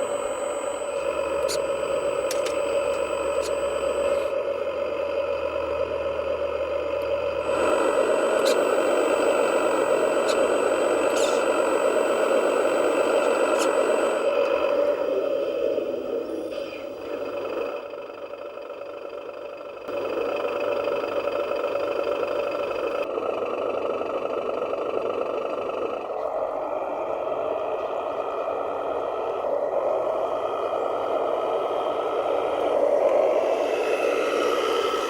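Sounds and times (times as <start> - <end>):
small electric motors whirring: 0.0 - 4.4, 7.4 - 15.3.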